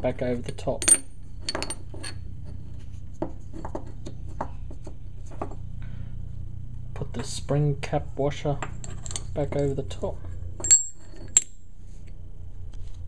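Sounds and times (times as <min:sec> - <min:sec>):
low steady hum: 0:00.0 - 0:13.0
metal parts clicking and tapping: 0:00.4 - 0:02.2, 0:10.6 - 0:11.6.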